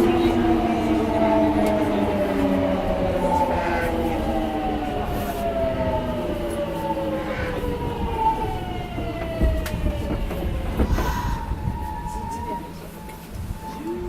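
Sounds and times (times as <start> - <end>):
train running rumble: 0.0 - 14.0.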